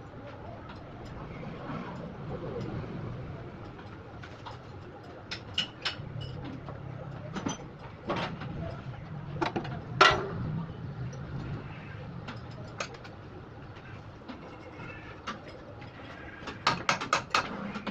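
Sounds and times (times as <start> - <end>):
low steady hum: 0.0 - 16.7
sharp clicks and knocks: 16.5 - 17.9.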